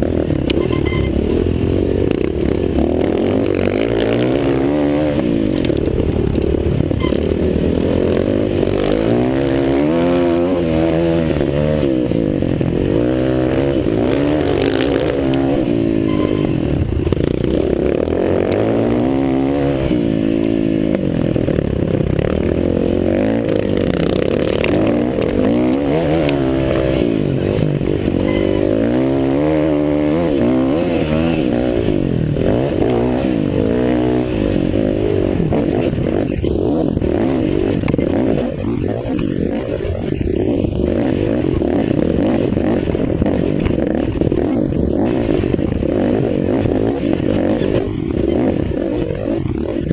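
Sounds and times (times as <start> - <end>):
motocross bike engines revving: 0.0 - 49.9.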